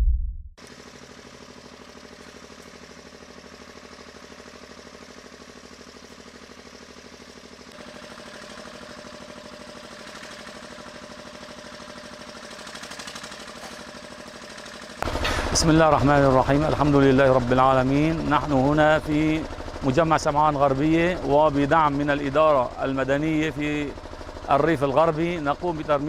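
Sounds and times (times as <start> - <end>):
engine idling: 0.6 - 26.0.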